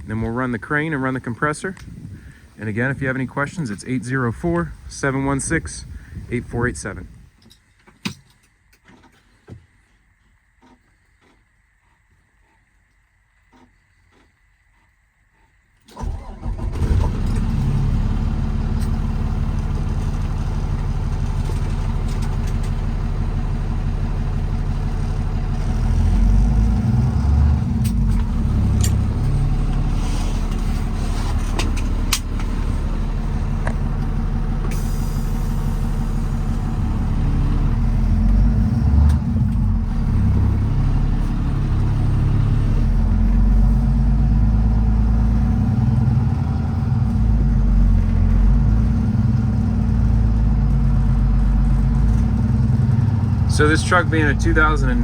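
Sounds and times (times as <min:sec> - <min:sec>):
diesel truck engine starting and running: 0:00.0 - 0:07.2, 0:15.8 - 0:55.0.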